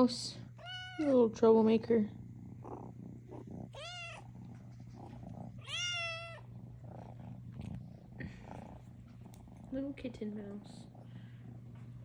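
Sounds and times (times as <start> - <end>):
cat purring: 0.0 - 12.0.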